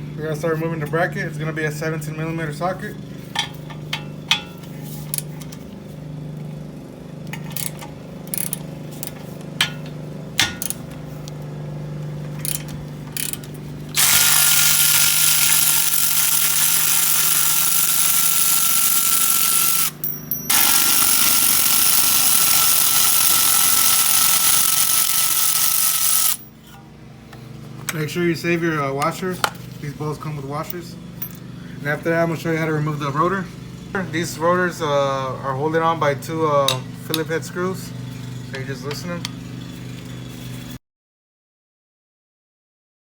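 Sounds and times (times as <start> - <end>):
power tool whining: 12.4 - 26.7.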